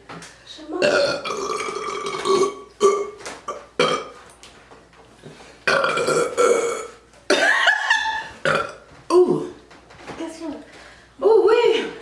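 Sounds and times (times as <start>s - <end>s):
woman burping: 0.8s - 4.2s, 5.7s - 9.6s.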